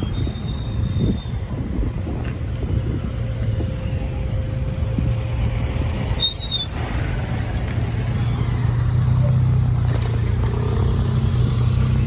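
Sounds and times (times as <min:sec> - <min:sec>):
vehicle engines rumbling: 0:00.0 - 0:12.0
brief high squeak: 0:06.1 - 0:06.8.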